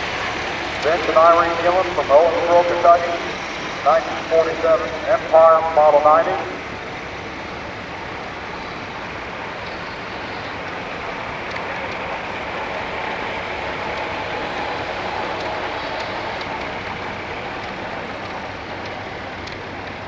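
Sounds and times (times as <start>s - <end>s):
tractor engine driving past: 0.0s - 20.0s.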